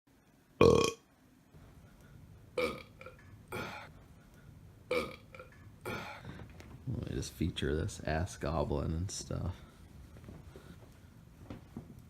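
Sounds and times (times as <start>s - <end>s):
person belching: 0.6s - 1.0s, 2.6s - 3.9s, 4.9s - 6.2s.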